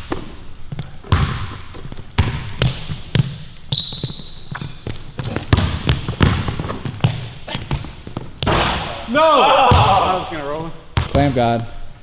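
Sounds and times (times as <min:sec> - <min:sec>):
basketball bouncing on court: 0:00.0 - 0:09.0, 0:09.6 - 0:10.2, 0:11.0 - 0:11.4
sneaker squeaks: 0:00.0 - 0:09.0.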